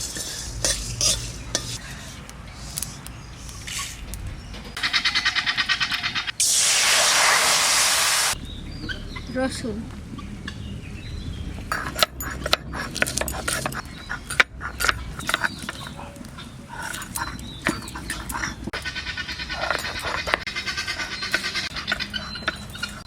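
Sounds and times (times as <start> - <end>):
spices roasting in a pan: 0.0 - 4.1, 6.4 - 8.4
stirring clicks and scrapes: 0.0 - 4.2, 11.8 - 23.0.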